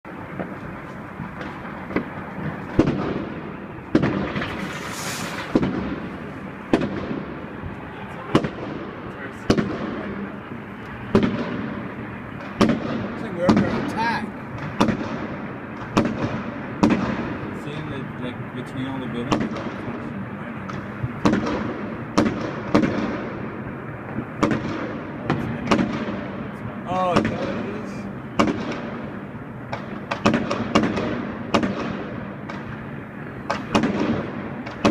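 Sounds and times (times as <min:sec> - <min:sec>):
distant fireworks bangs and crackle: 0:00.1 - 0:34.9
fireworks bangs with echo: 0:00.1 - 0:34.9
brief hiss: 0:04.5 - 0:05.6.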